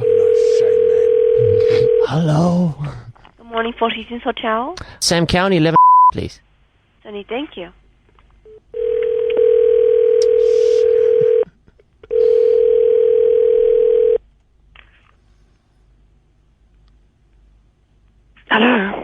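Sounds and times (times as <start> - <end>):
telephone ringback tone: 0.0 - 2.1, 8.8 - 11.4, 12.1 - 14.2.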